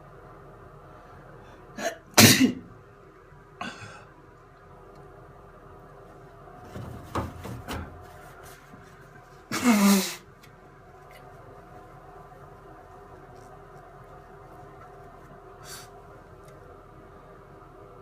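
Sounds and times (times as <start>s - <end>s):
person sneezing: 1.8s - 2.7s, 9.5s - 10.3s.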